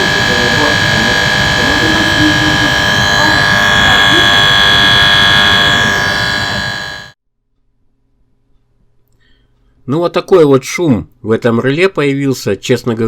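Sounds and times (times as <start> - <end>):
high whining tones: 0.0 - 7.2
relay electrical buzz: 0.0 - 7.2.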